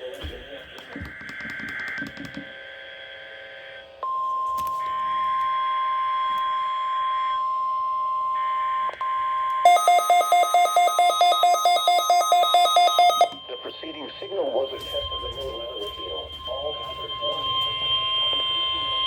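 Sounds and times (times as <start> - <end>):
steady alarm tone: 1.0 - 19.0.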